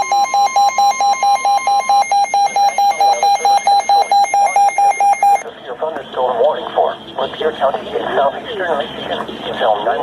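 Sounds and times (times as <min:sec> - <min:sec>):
rapid electronic alert beeps: 0:00.0 - 0:05.4
steady high tone: 0:00.0 - 0:05.4.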